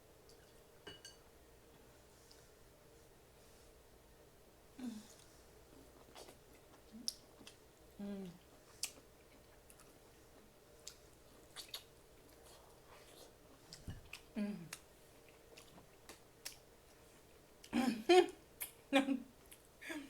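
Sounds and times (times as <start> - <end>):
person humming mm: 4.8 - 5.2, 8.0 - 8.4, 14.3 - 14.8
person chewing: 5.7 - 7.6, 8.2 - 17.7
wet clicks and lip smacks: 10.8 - 11.9, 15.6 - 16.7, 18.6 - 18.8.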